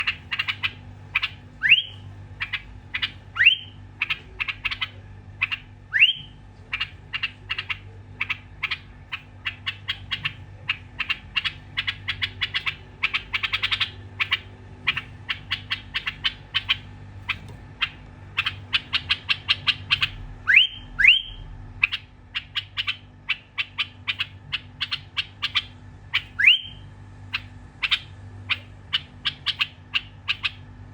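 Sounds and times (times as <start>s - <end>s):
bird chipping calls: 0.0s - 30.8s
faint low hum: 0.0s - 30.9s
upward-sweeping whistle: 20.5s - 21.4s.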